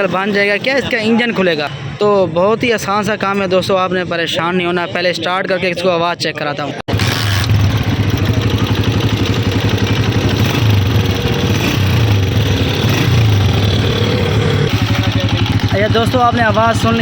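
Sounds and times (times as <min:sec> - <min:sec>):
engine tappet noise: 0:06.9 - 0:17.0
motorcycle engine running: 0:06.9 - 0:17.0.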